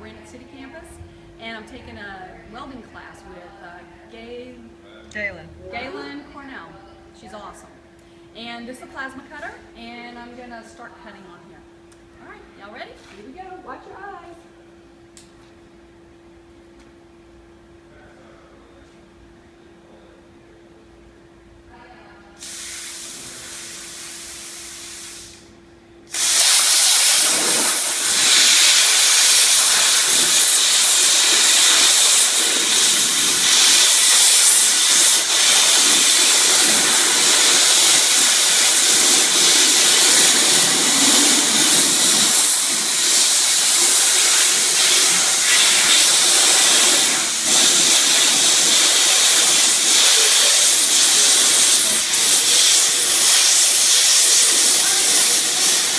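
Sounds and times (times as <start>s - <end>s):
plasma cutter hissing: 22.4s - 25.5s, 26.1s - 55.9s.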